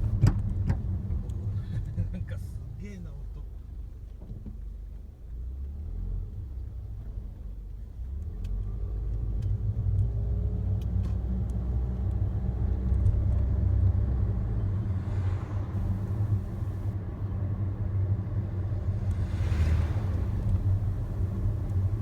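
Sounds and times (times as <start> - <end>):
minivan road rumble: 0.0 - 22.0.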